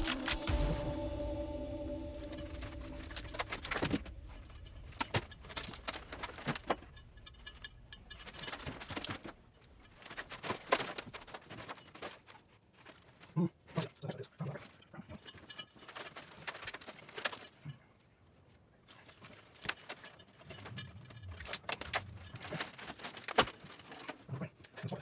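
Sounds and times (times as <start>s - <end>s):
soft low thumps: 0.0s - 8.8s
wires and small parts handled: 18.9s - 24.2s.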